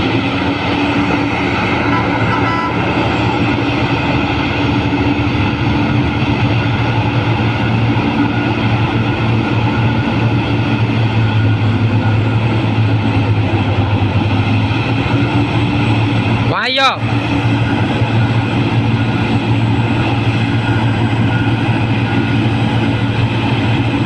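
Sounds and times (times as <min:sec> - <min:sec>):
excavator engine droning: 0:00.0 - 0:24.0.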